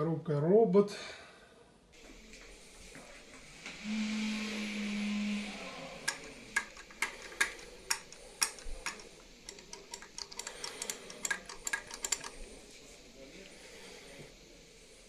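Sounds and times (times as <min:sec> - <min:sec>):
sharp clicks: 0:06.0 - 0:12.7.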